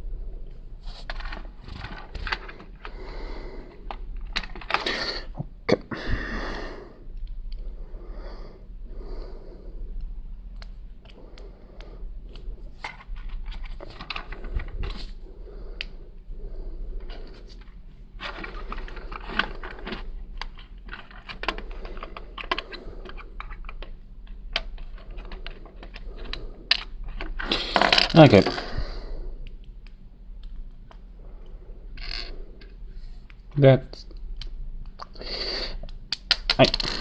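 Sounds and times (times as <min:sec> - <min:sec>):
plastic bricks clicking: 0:35.8 - 0:37.0.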